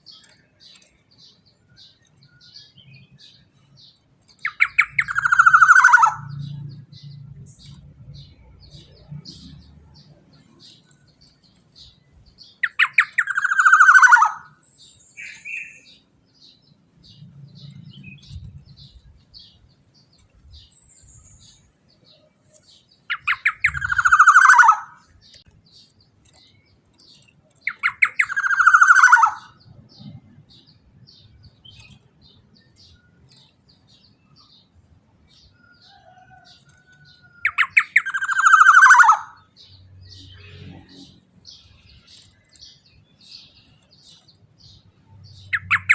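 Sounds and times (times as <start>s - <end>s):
oriole calling: 4.4s - 6.5s, 12.6s - 14.6s, 23.1s - 25.0s, 27.7s - 29.6s, 37.5s - 39.4s.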